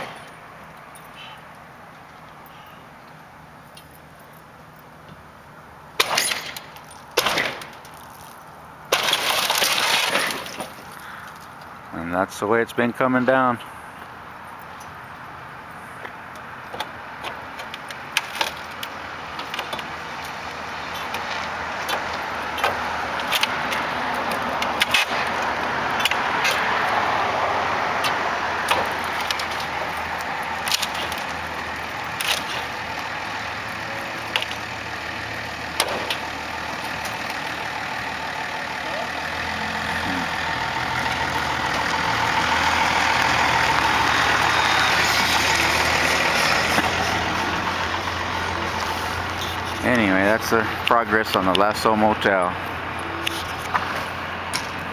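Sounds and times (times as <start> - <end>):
vehicle engine running: 20.0 - 54.9.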